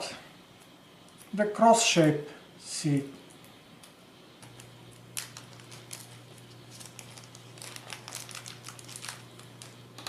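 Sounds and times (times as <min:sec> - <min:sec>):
low steady hum: 0:00.0 - 0:10.0
plastic bag crinkling: 0:04.4 - 0:10.0.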